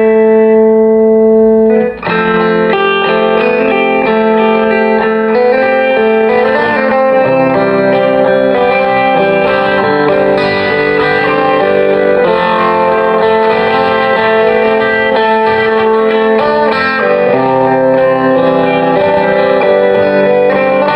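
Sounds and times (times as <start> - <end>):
clean electric guitar chords: 0.0 - 20.9.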